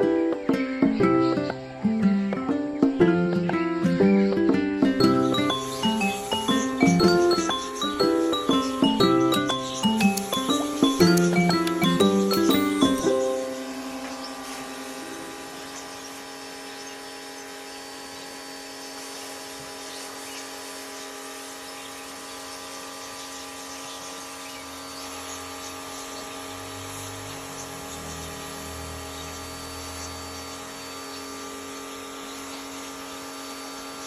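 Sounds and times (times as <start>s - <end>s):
mechanical hum with whine: 0.0s - 34.0s.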